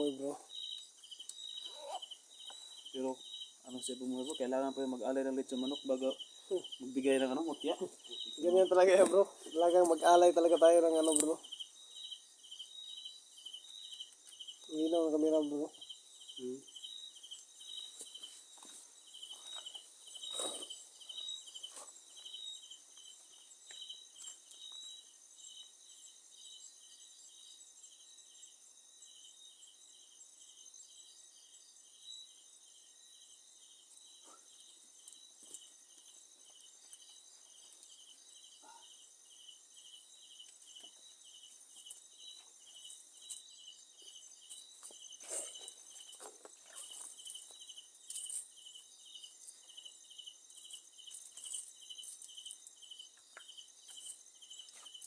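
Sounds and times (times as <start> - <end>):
high-pitched insect drone: 0.0 - 13.2
cricket chirping: 0.0 - 55.0
faint rustles and clicks: 44.5 - 48.6.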